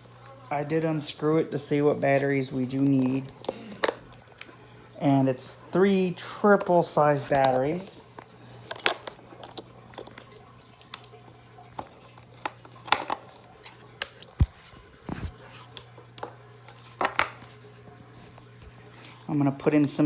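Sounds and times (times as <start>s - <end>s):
clicks of plastic parts and batteries: 8.2s - 11.2s.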